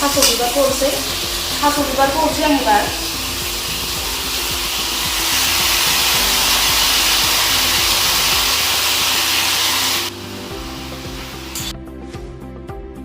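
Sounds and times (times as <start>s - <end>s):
food sizzling in hot pan: 0.0s - 11.7s
background music: 0.0s - 13.0s.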